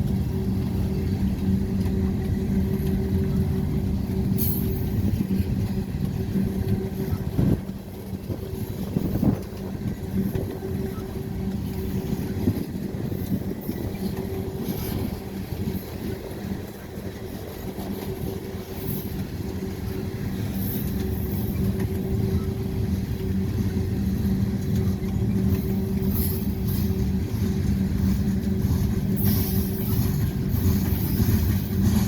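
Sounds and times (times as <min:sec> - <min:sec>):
diesel engine hum: 0:00.0 - 0:32.0
train rumble: 0:00.0 - 0:32.0.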